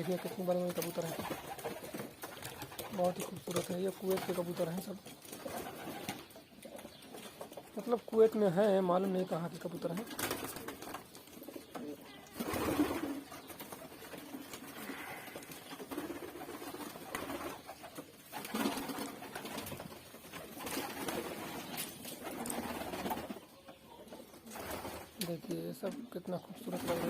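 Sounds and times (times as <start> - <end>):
pigeons cooing: 10.0 - 25.2.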